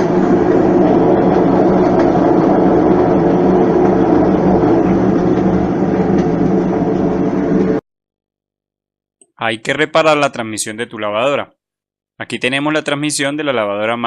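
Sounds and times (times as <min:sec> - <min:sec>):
washing machine spin cycle rumble: 0:00.0 - 0:07.8.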